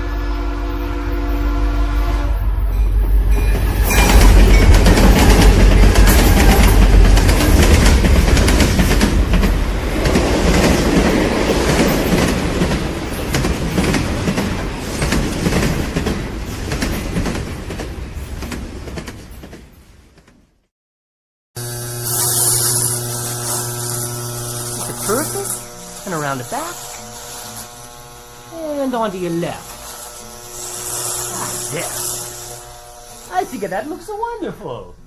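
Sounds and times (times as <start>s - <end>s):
train wheels clattering on rails: 3.3s - 20.4s.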